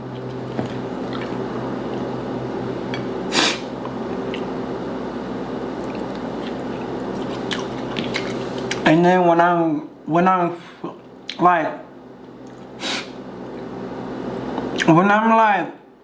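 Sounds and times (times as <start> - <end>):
steady low hum: 0.0 - 16.0
wet mouth sounds eating: 0.2 - 2.1, 5.8 - 8.9.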